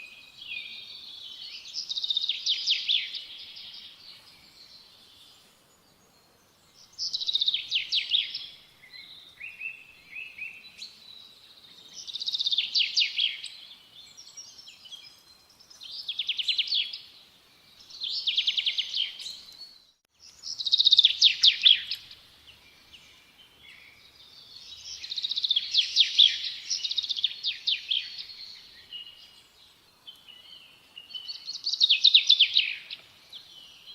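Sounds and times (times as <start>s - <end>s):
songbird trilling: 20.5s - 22.1s.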